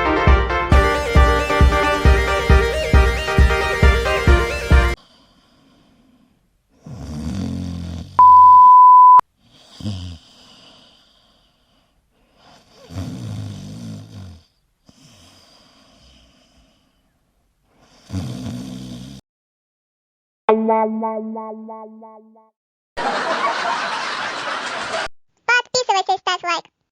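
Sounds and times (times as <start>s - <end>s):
dog snoring: 4.9s - 8.2s, 9.4s - 17.0s, 17.7s - 19.2s
loud steady beep: 8.2s - 9.2s.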